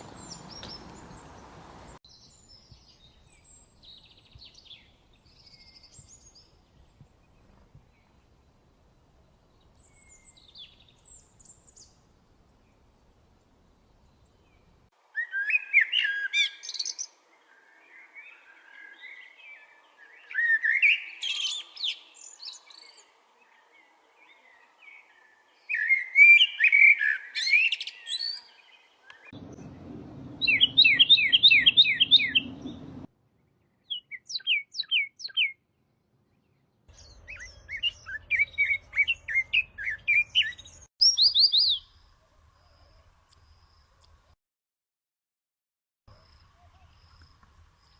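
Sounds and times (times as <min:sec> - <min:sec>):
songbird warbling and trilling: 0:00.0 - 0:06.6, 0:25.7 - 0:33.0, 0:33.8 - 0:35.6, 0:36.9 - 0:41.9
low rumbling noise: 0:29.4 - 0:33.1.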